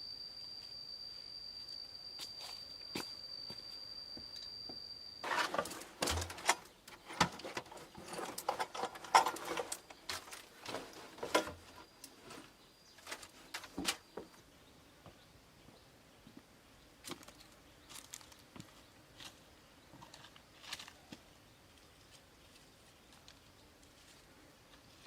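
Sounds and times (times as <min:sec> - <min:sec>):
steady high tone: 0:00.0 - 0:06.3.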